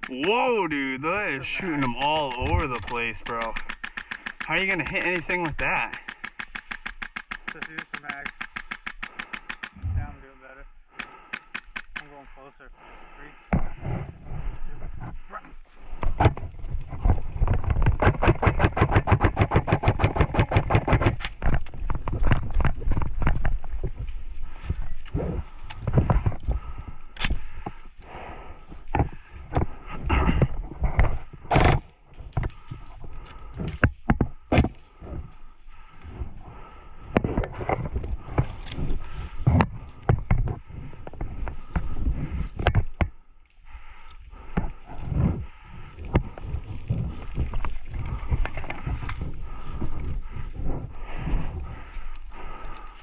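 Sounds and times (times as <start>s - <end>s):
airsoft guns firing: 1.7s - 9.8s
wind noise: 9.7s - 10.3s, 13.5s - 53.0s
rustling on microphone: 13.5s - 53.0s.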